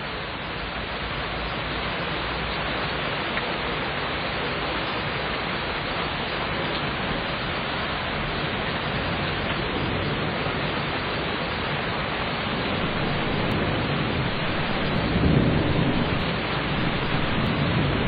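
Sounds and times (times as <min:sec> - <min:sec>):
steady rain: 0:00.0 - 0:18.0
thunder rumble: 0:08.2 - 0:18.0.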